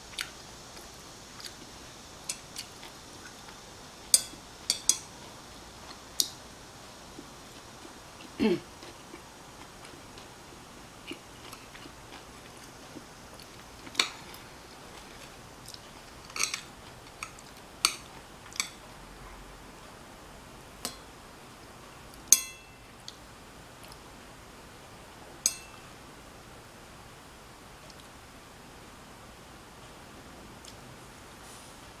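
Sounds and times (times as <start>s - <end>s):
ringing clink: 22.3s - 22.8s, 25.5s - 25.8s.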